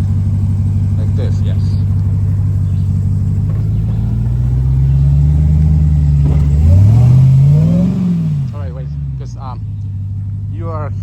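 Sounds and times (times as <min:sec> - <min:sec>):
pickup truck engine revving: 0:00.0 - 0:11.0.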